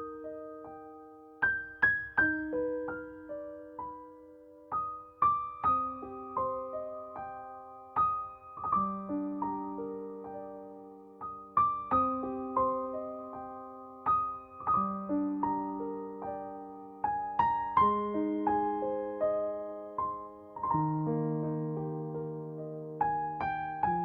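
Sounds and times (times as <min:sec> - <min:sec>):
soft arpeggiated piano: 0:00.0 - 0:24.0.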